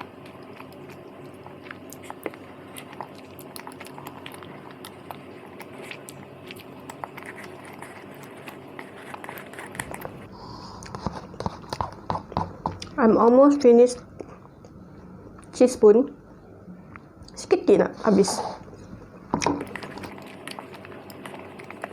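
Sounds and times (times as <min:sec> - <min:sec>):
biting and chewing: 0:00.0 - 0:12.6, 0:19.4 - 0:21.9
steady background hum: 0:00.0 - 0:21.9.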